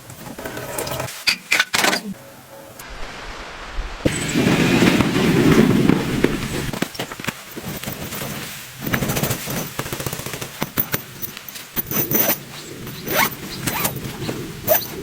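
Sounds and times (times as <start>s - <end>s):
loud low rumbling: 2.8s - 6.8s.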